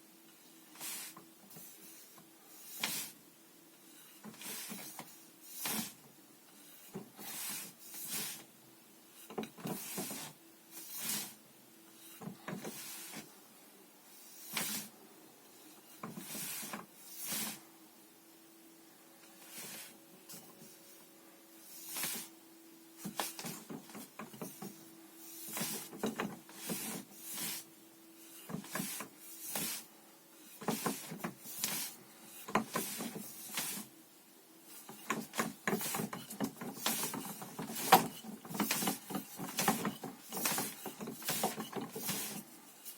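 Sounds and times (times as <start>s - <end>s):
faint steady hum: 0.0s - 42.9s
sleeves and arms swishing: 4.1s - 6.0s, 9.3s - 11.4s, 21.6s - 22.4s, 23.0s - 29.9s, 30.5s - 33.9s, 34.6s - 42.9s
hissing whooshes of hand movements: 19.4s - 21.0s, 21.6s - 22.4s, 23.0s - 29.9s.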